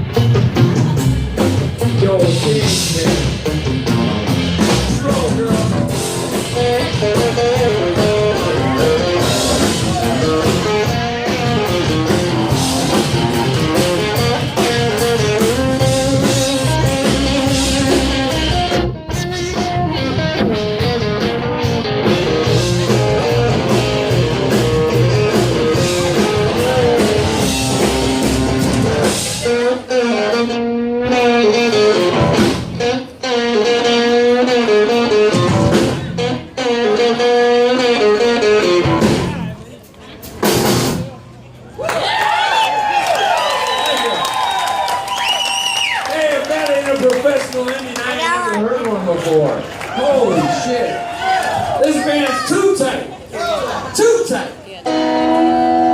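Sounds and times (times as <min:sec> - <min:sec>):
electric guitar lead: 0:00.0 - 0:39.6, 0:54.6 - 0:55.9
bass guitar: 0:00.0 - 0:42.3, 0:43.2 - 0:55.9
drums: 0:00.0 - 0:55.9.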